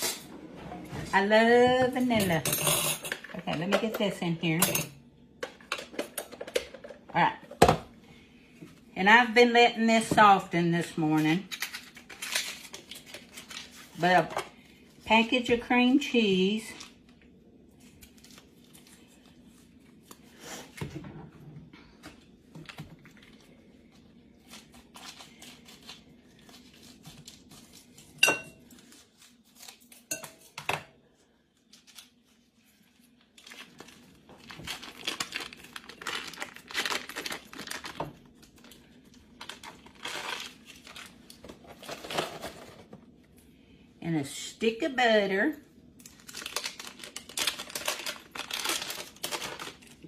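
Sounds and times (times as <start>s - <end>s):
foil wrapper crinkling and tearing: 11.4s - 14.0s, 17.8s - 20.4s, 24.3s - 30.1s, 31.6s - 42.9s, 46.0s - 50.0s.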